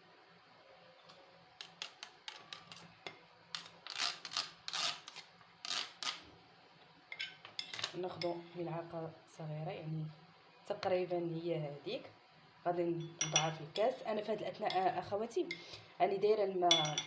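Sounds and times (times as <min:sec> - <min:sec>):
metal utensils scraping and clicking: 0:01.6 - 0:02.9, 0:07.1 - 0:08.4.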